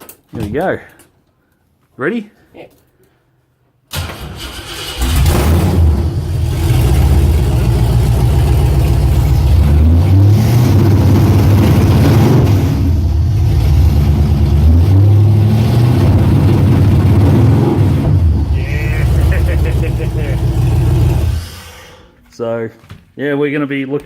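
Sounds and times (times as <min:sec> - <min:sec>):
drag car engine revving: 0:04.4 - 0:21.8.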